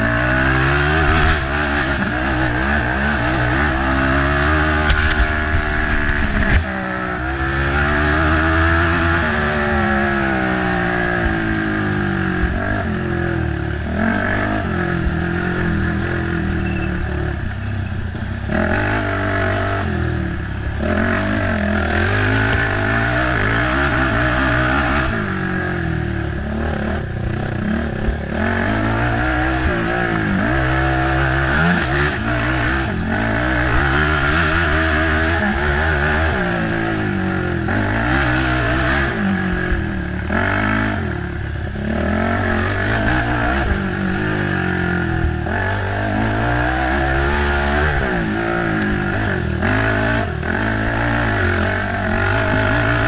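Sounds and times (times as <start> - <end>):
atv engine revving: 0.0 - 53.0
clatter and scraping: 4.4 - 6.8.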